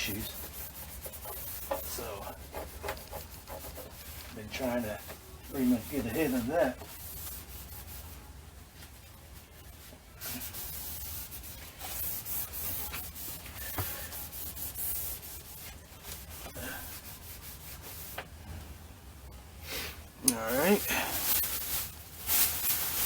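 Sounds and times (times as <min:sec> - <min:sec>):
rubbing on rubber door seal: 0:00.0 - 0:08.0.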